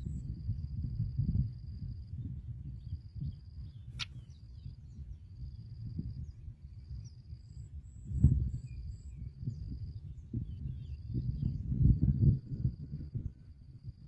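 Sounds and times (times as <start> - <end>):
steady low rumble: 0.0 - 14.0
sharp click: 4.0 - 4.2.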